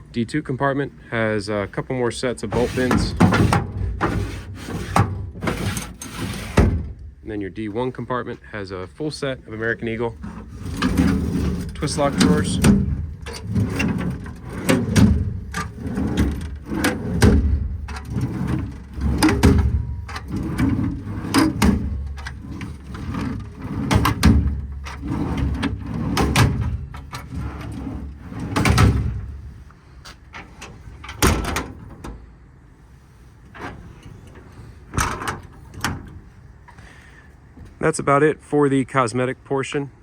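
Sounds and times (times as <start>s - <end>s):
metal drawers sliding with clattering: 2.1s - 7.1s, 9.3s - 32.3s, 33.0s - 36.8s.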